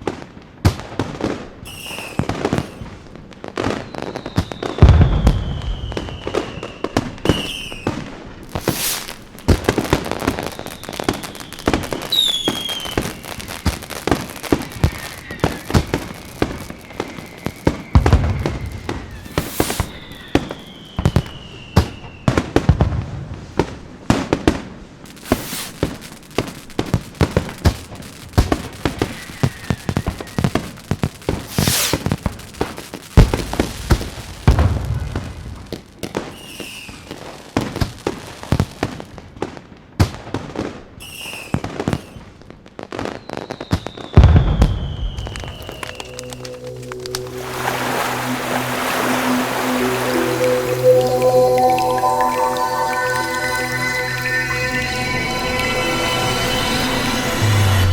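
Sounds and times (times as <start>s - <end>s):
fireworks crackling and popping: 0.0s - 57.6s
fireworks whistles: 1.6s - 3.0s, 3.6s - 22.8s, 25.1s - 34.7s, 36.1s - 37.4s, 41.0s - 42.3s, 43.0s - 57.9s
fireworks booms: 3.7s - 24.5s.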